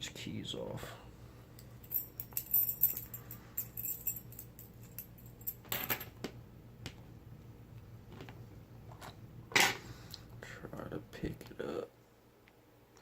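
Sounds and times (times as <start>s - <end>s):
metal keys jangling: 1.8s - 6.0s.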